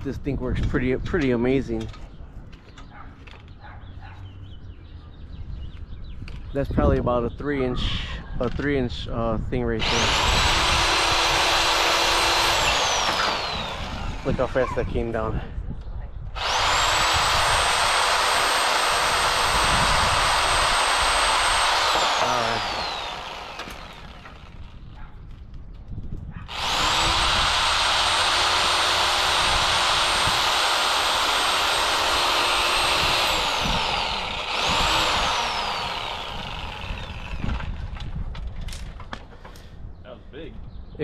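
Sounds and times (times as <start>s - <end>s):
reciprocating saw cutting branches: 9.8s - 14.8s, 16.4s - 24.9s, 26.5s - 38.0s.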